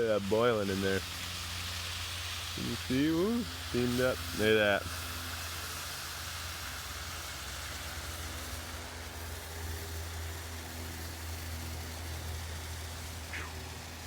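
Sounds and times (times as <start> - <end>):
short chirp: 13.3 - 13.6.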